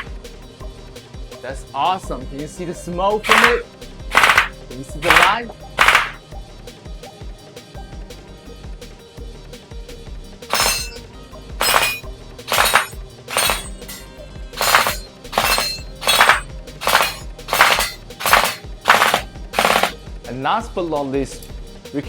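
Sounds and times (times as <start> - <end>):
gel blaster firing bursts: 3.2 - 6.2, 10.5 - 11.0, 11.6 - 14.0, 14.6 - 20.0.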